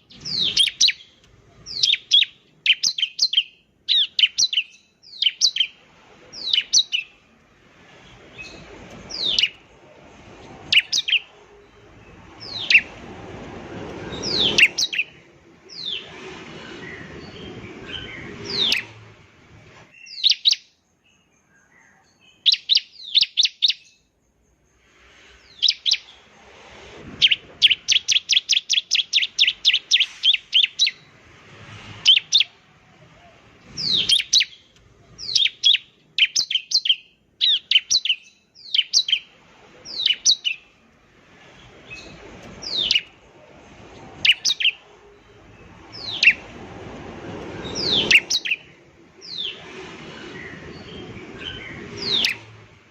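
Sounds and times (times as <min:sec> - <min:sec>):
bird trill: 0:00.0 - 0:07.2, 0:08.3 - 0:09.7, 0:10.6 - 0:13.0, 0:14.1 - 0:19.0, 0:19.9 - 0:24.1, 0:25.4 - 0:26.2, 0:27.2 - 0:31.1, 0:33.7 - 0:40.8, 0:41.8 - 0:43.2, 0:44.2 - 0:46.6, 0:47.6 - 0:52.6
bird chirping: 0:00.0 - 0:13.1, 0:13.8 - 0:26.3, 0:27.2 - 0:31.2, 0:32.0 - 0:46.7, 0:47.3 - 0:52.9.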